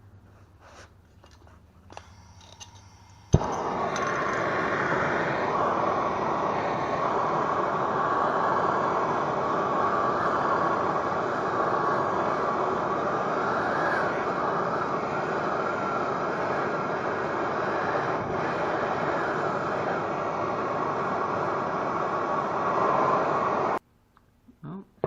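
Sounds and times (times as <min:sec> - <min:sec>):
gas torch hissing: 0:00.4 - 0:23.8
gas torch ignition click: 0:01.2 - 0:05.6.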